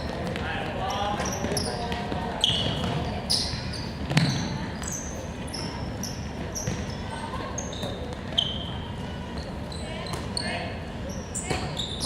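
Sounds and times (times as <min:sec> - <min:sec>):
gym hall noise: 0:00.0 - 0:12.0
shoes squeaking on court floor: 0:00.0 - 0:12.0
ball bounce: 0:04.1 - 0:04.5.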